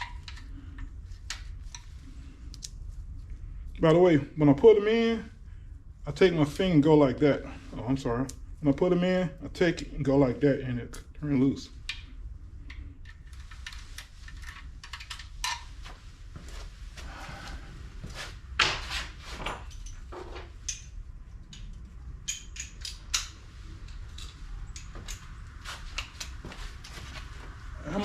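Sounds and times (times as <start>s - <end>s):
low steady hum: 0.0s - 28.0s
metallic clicks of tools and bolts: 19.6s - 25.3s.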